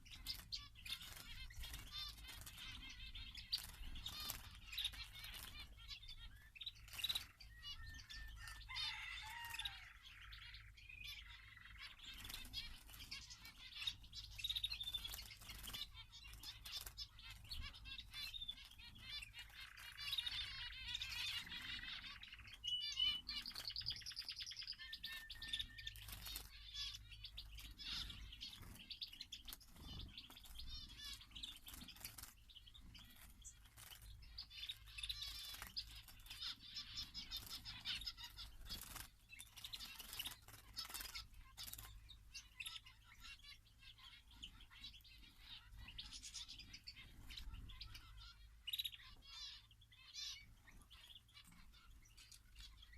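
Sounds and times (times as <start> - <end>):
wings fluttering: 0.0 - 9.8, 11.6 - 22.6, 23.2 - 42.0
small birds chirping: 0.0 - 52.9.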